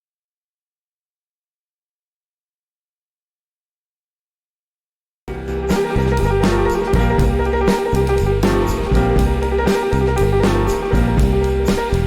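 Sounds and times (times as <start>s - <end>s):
instrumental music: 5.3s - 12.0s.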